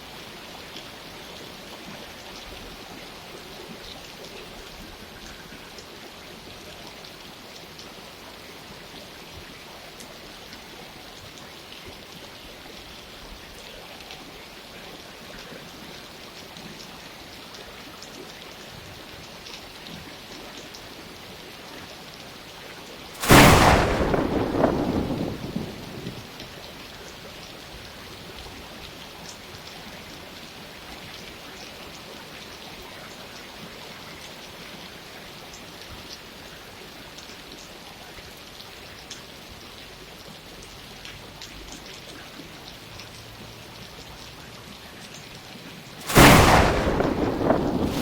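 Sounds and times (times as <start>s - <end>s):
steady rain falling: 0.0s - 48.0s
thunderclap: 23.2s - 26.5s, 46.0s - 48.0s.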